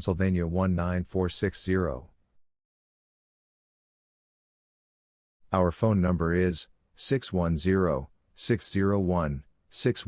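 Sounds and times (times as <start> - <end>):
synthesized voice: 0.0 - 2.1, 5.6 - 10.0.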